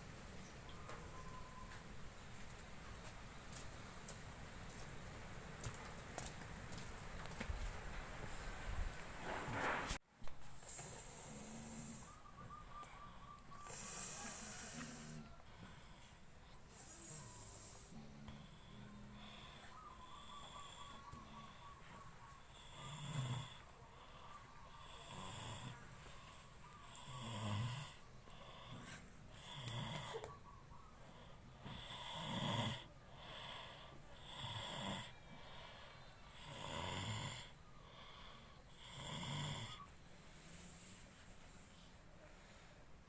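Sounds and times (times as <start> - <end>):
person snoring: 10.7 - 12.1, 13.7 - 21.6, 26.9 - 30.2, 31.6 - 39.8.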